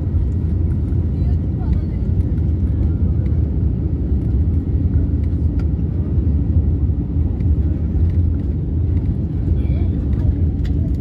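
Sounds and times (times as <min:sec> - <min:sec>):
airliner cabin rumble: 0:00.0 - 0:11.0.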